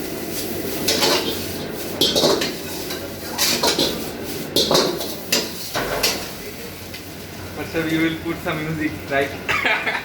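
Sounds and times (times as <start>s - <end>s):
metal utensil clanking on wok: 0.8s - 6.4s.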